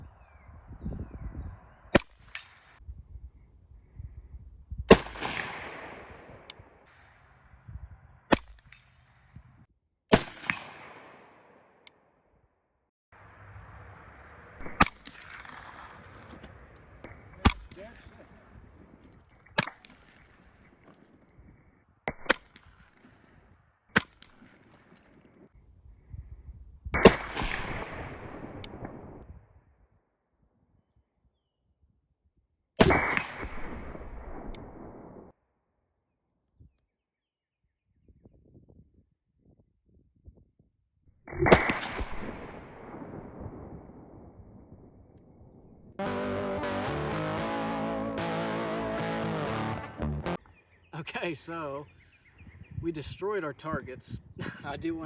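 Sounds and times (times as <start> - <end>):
rifle shots: 4.9 - 6.7, 10.1 - 11.6, 14.6 - 18.1, 19.6 - 20.4, 27.0 - 29.0, 32.8 - 34.6, 41.4 - 43.2
rolling echo: 13.3 - 21.3.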